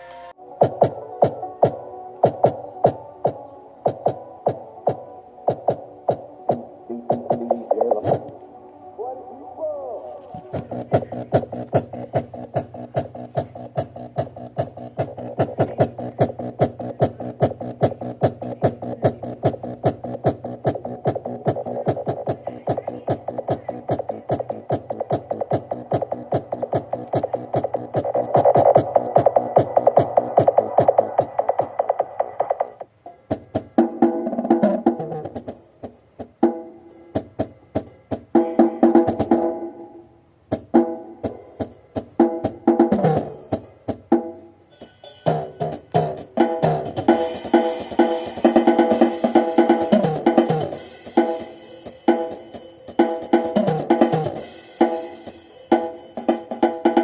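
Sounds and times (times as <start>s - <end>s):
electronic dance music: 0.0s - 32.9s, 45.2s - 57.0s.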